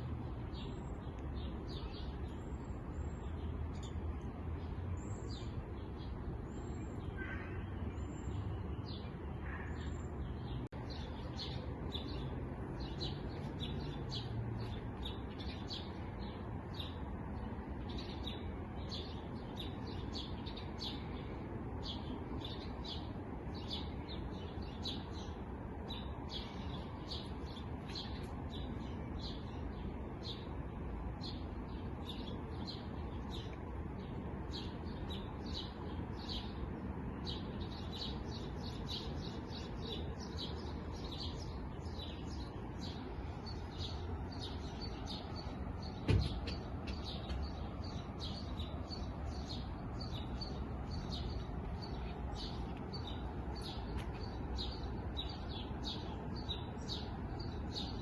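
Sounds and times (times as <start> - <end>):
songbirds chirping: 0.0 - 58.0
thump: 46.0 - 47.4.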